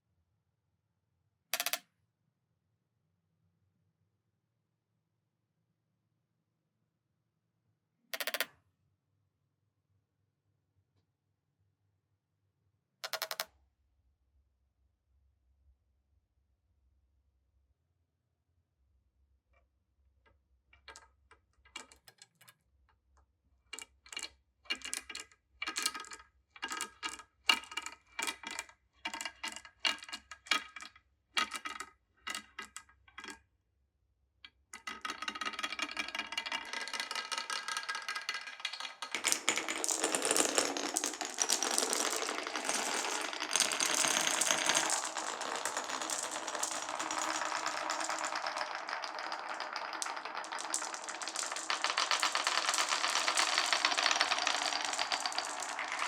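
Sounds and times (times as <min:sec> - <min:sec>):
marbles rolling along track: 0:13.1 - 0:13.4, 0:23.8 - 0:33.4, 0:34.8 - 0:56.0
marbles clacking: 0:34.8 - 0:56.0.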